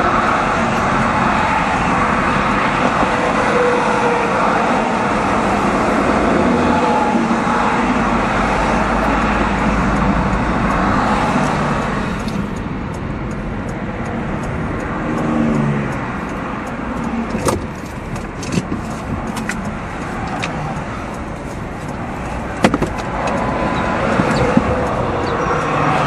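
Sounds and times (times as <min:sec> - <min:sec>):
van road and engine noise: 0:00.0 - 0:26.0.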